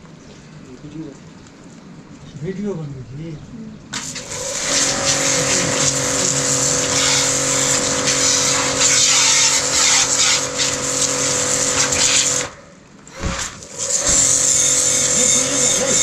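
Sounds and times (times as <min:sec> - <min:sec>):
water jet hissing: 0:03.9 - 0:16.0
pressure washer motor hum: 0:04.0 - 0:16.0.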